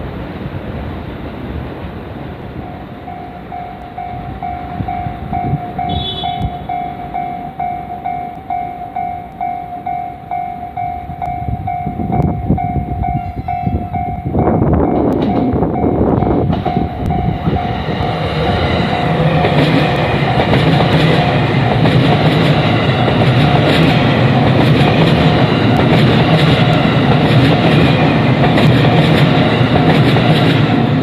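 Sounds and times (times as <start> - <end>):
train running noise: 0.0 - 31.0
level crossing warning bell: 2.6 - 24.3.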